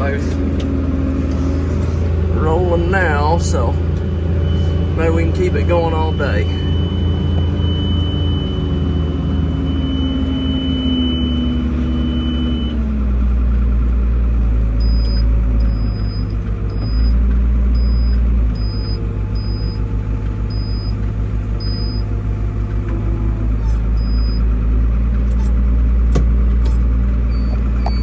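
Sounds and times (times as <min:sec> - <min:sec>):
tractor engine drone: 0:00.0 - 0:28.0
short high beeps: 0:03.8 - 0:12.8, 0:27.3 - 0:28.0.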